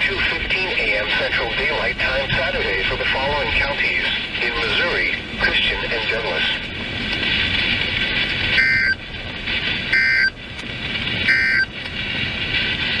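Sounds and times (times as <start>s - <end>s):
receiver hiss: 0.0s - 13.0s
warbling two-tone data bursts: 8.6s - 9.0s, 9.9s - 10.3s, 11.3s - 11.7s.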